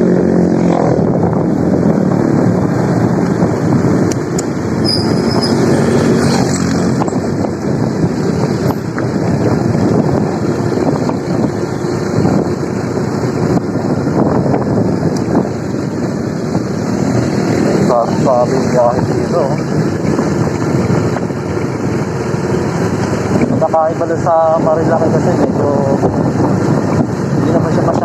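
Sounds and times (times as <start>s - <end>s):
motorcycle engine cruising: 0.0s - 28.0s
wind buffeting microphone: 0.0s - 28.0s.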